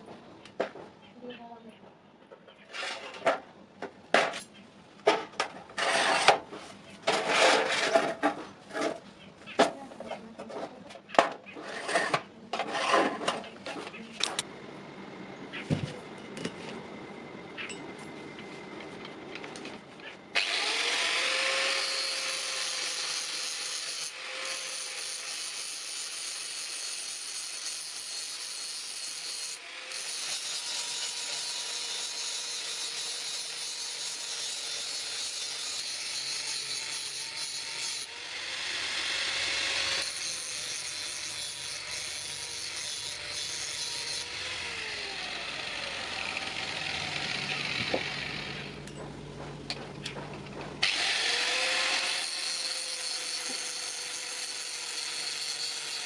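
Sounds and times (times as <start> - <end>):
electric grinder grinding metal rod: 20.4 - 49.0, 50.8 - 56.0.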